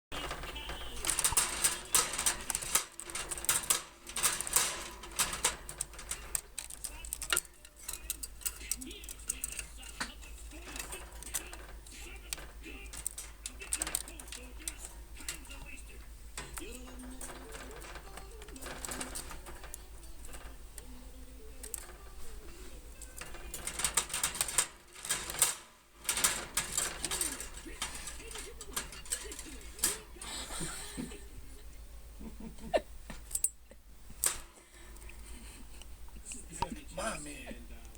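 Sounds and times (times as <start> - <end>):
wire bird cage rattling: 0.0 - 37.9.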